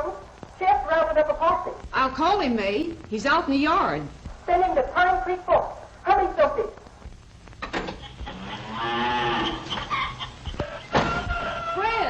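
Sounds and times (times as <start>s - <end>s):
cow mooing: 8.3s - 9.7s.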